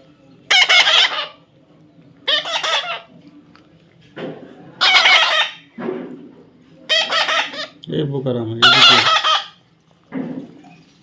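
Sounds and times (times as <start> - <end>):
parrot harsh calls: 0.5 - 1.4, 2.2 - 3.1, 4.8 - 5.7, 6.9 - 7.8, 8.6 - 9.6.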